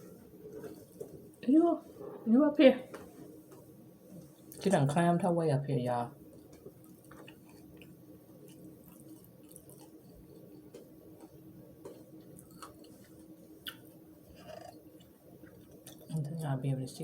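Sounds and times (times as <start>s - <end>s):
faint chewing: 0.0s - 2.3s, 6.2s - 16.4s
steady low hum: 0.0s - 17.0s.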